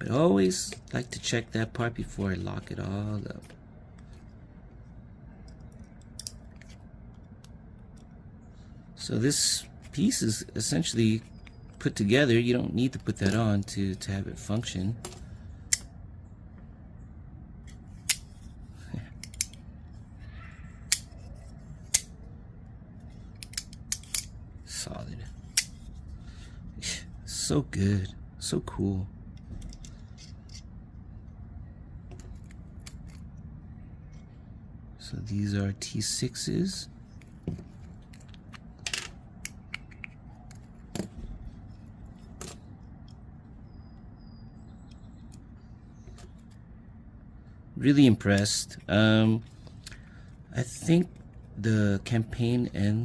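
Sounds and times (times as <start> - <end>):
low steady hum: 0.0 - 53.0
metallic clicks of knife parts: 15.1 - 15.9, 19.2 - 19.6, 23.3 - 24.4.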